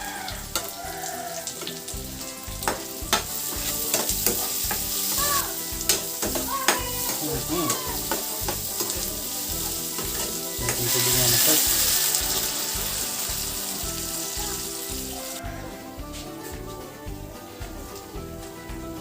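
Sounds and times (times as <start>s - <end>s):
vegetables sizzling in oil: 0.0s - 15.6s
spatula clicking against pan: 0.5s - 0.8s, 2.6s - 9.2s.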